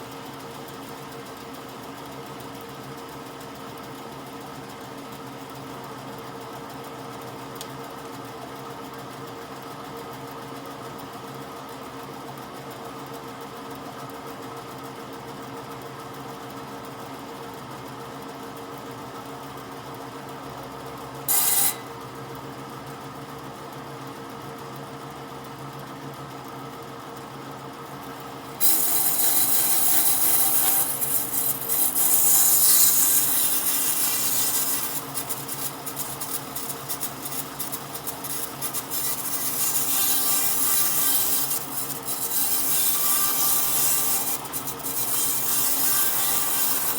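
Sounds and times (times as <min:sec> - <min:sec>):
tool rasping on wood: 0:21.3 - 0:21.9, 0:28.6 - 0:46.9
power tool motor humming: 0:21.3 - 0:22.0, 0:28.5 - 0:46.9.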